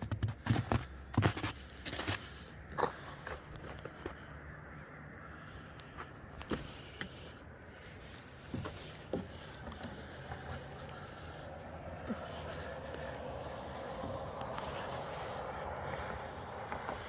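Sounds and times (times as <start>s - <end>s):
footsteps on snow: 0.0s - 4.4s, 7.7s - 17.0s.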